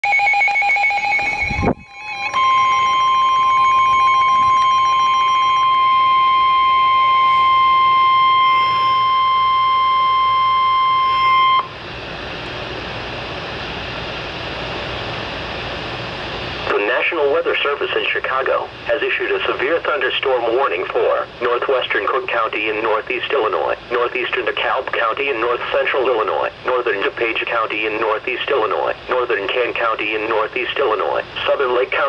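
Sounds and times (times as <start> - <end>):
pulsing tones: 0.0 - 11.7
steady alert tone: 0.0 - 11.7
radio static hiss: 8.2 - 9.1, 16.5 - 32.0.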